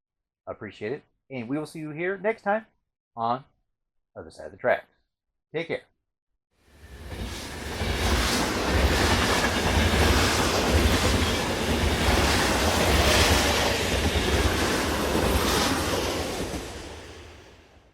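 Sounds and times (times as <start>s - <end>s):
train rumbling: 6.7s - 17.9s
wheels clacking on rail joints: 7.1s - 16.8s.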